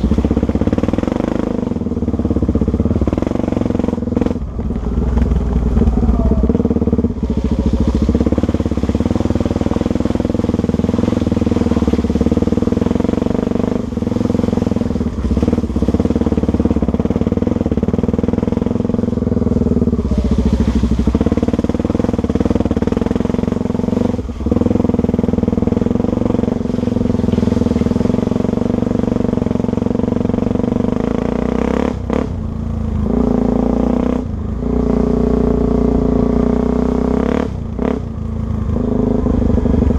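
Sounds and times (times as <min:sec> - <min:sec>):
motorcycle engine running hard: 0:00.0 - 0:39.9.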